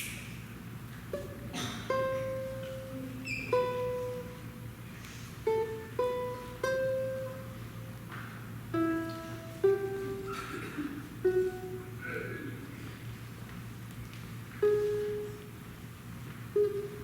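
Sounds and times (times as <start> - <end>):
steady low hum: 0.0 - 17.0
plucked string melody: 1.1 - 4.8, 5.4 - 12.0, 14.6 - 15.6, 16.5 - 17.0.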